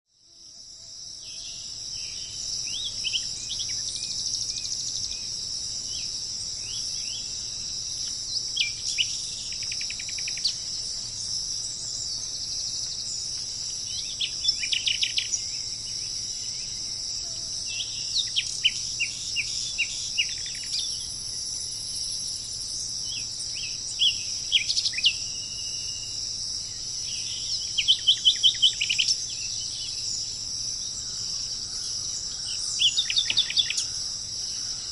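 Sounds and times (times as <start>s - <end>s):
high-pitched insect drone: 0.1s - 34.9s
birds chirping: 1.3s - 17.1s, 17.7s - 34.9s.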